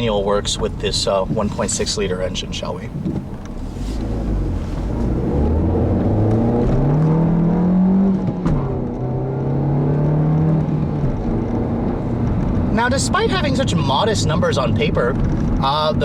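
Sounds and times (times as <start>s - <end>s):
car engine accelerating: 1.5s - 16.0s
gear shift click: 2.8s - 7.2s.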